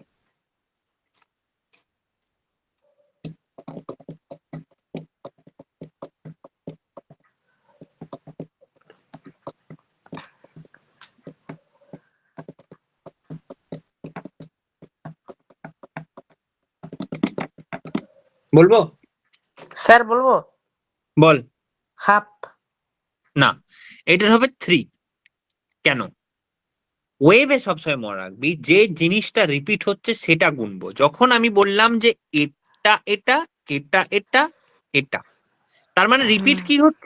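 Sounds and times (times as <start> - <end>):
typing on a computer keyboard: 3.2 - 18.1.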